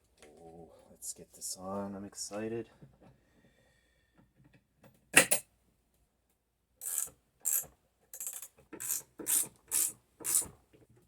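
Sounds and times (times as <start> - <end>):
ratchet wrench clicking: 6.8 - 10.5.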